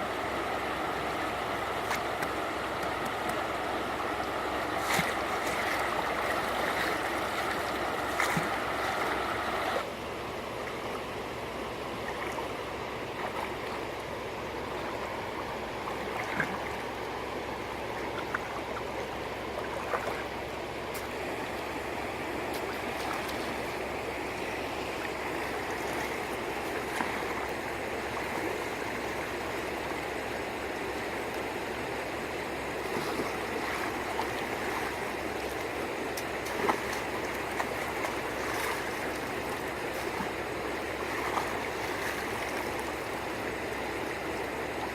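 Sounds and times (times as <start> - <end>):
shallow water sloshing: 1.5 - 9.8, 14.7 - 21.7, 22.4 - 29.6, 32.5 - 44.9.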